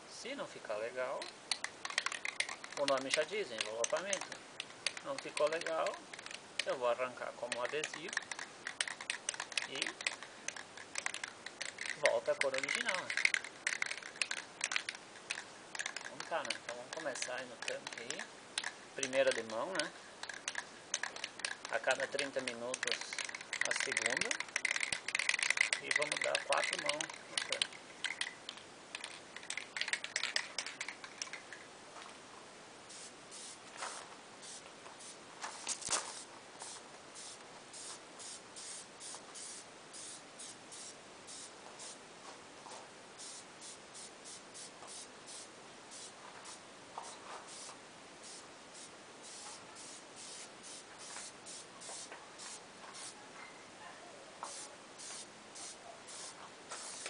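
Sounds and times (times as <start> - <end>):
aerosol spray hissing: 32.9 - 33.6, 34.4 - 35.2, 36.0 - 42.0, 43.2 - 46.6, 47.5 - 53.2, 54.4 - 57.0.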